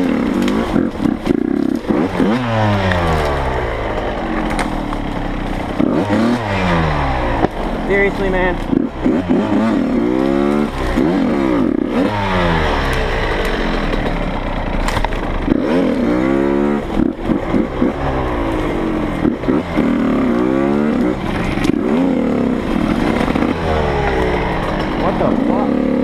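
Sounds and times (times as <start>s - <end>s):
dirt bike engine revving: 0.0s - 26.0s.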